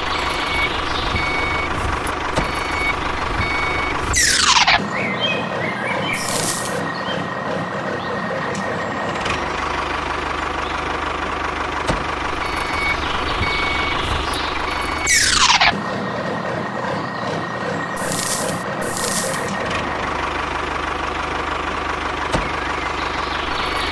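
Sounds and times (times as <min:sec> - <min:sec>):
construction vehicle engine drone: 0:00.0 - 0:23.9
reversing beeps: 0:00.2 - 0:04.4, 0:06.2 - 0:06.9, 0:12.4 - 0:15.4, 0:18.0 - 0:19.5
short hiss: 0:06.2 - 0:06.8, 0:18.0 - 0:19.5.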